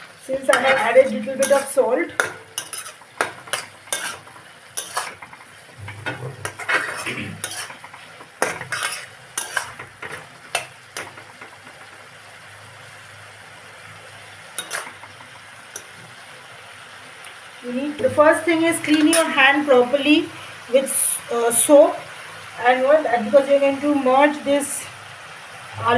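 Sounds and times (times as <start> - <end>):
spoon stirring and scraping pan: 0.0 - 12.2, 14.3 - 16.3, 18.0 - 19.6
faint sizzle: 0.0 - 25.9
spoon clinking against metal: 0.5 - 4.2, 14.6 - 14.9.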